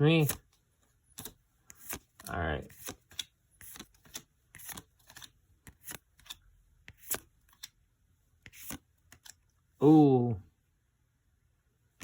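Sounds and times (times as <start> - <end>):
cards clicking and swishing: 0.2 - 7.8, 8.5 - 9.4.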